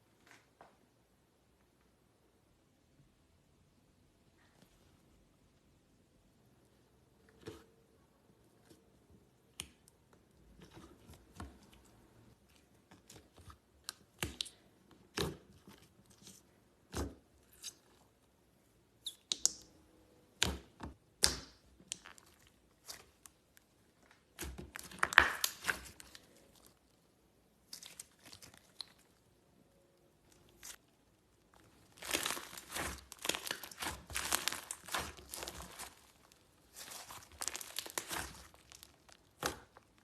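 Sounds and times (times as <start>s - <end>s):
slime clicking and popping: 19.0s - 19.7s, 20.4s - 22.2s.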